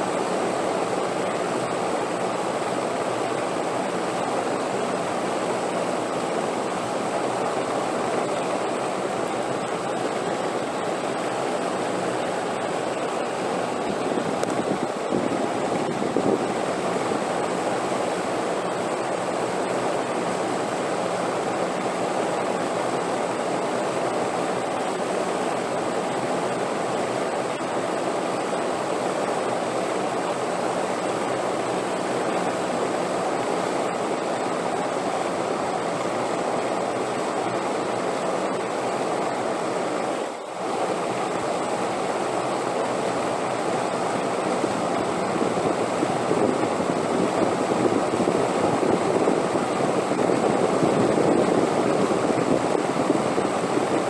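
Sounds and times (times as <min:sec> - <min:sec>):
rushing wind: 0:09.4 - 0:19.8, 0:43.1 - 0:54.0.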